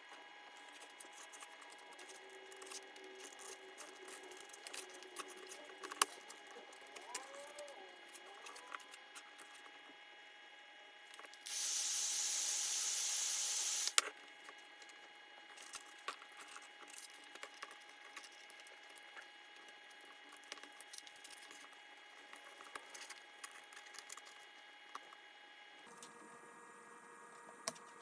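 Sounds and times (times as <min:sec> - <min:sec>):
small tools clicking and scraping: 0:00.6 - 0:09.7, 0:12.6 - 0:25.2.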